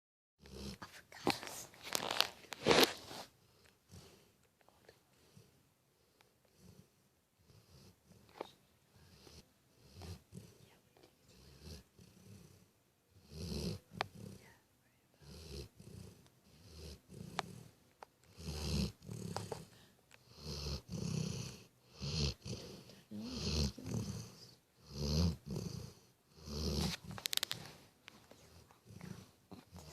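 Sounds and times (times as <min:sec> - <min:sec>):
dog snoring: 0:00.4 - 0:00.9, 0:06.5 - 0:10.6, 0:11.3 - 0:14.6, 0:15.2 - 0:29.9.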